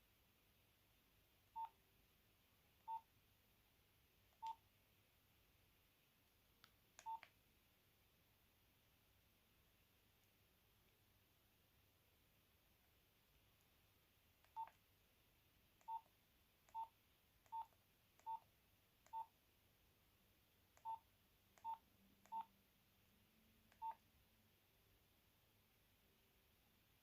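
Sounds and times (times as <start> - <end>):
keypad beeps: 4.4 - 4.6, 7.0 - 7.3, 14.5 - 14.8, 15.8 - 16.1, 16.7 - 16.9, 17.5 - 18.4, 19.1 - 19.3, 20.8 - 21.0, 21.6 - 22.5, 23.7 - 24.0.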